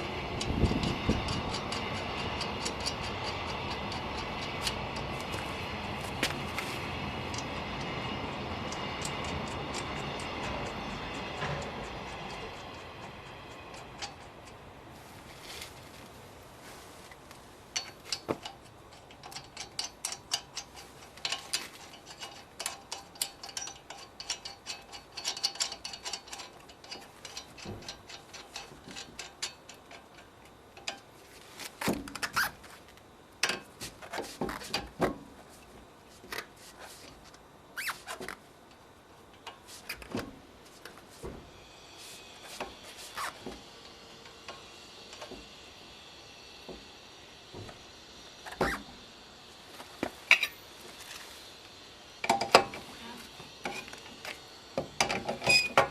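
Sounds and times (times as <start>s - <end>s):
rapid metallic ticking: 0.0s - 6.0s, 7.0s - 14.9s
metal tools clanking: 17.7s - 31.1s, 50.2s - 50.7s.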